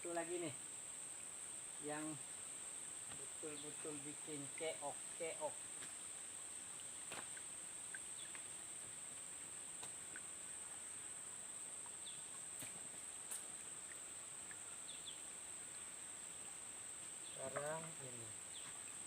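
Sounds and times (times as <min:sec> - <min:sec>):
high-pitched insect drone: 0:00.0 - 0:09.7, 0:16.2 - 0:18.9.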